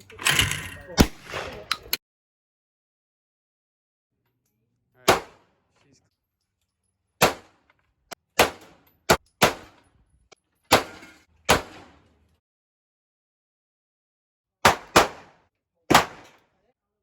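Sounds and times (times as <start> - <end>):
gunshots with echo: 7.2 - 7.5, 14.6 - 16.3.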